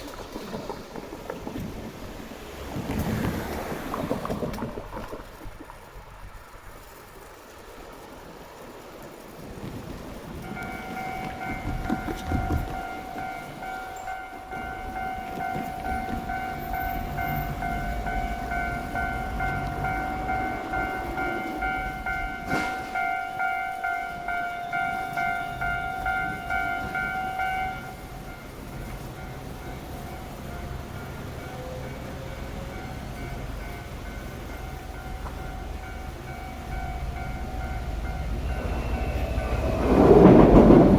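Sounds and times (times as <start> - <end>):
passing train rumble: 0.0 - 40.9
level crossing warning bell: 10.0 - 40.9.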